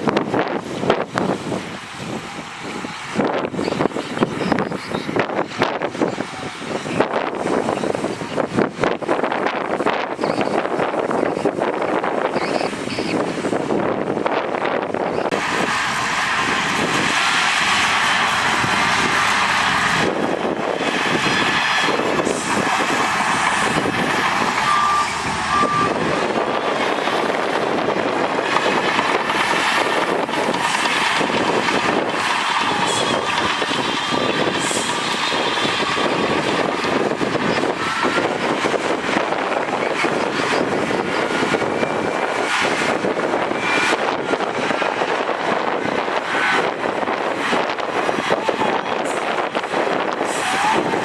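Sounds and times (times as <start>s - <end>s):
heavy diesel machinery running: 10.9s - 51.0s
reversing alarm beeps: 24.4s - 26.7s.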